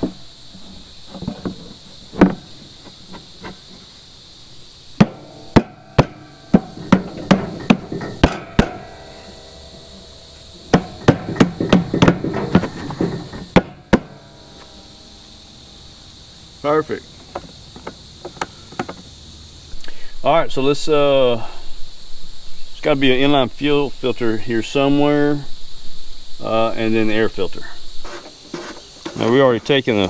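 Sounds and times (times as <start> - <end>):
sharp metallic knocks: 5.0 - 16.0.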